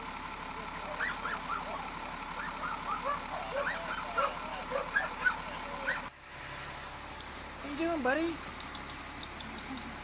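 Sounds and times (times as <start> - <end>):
vehicle engine running: 0.0 - 10.0
dogs yelping: 0.8 - 6.1.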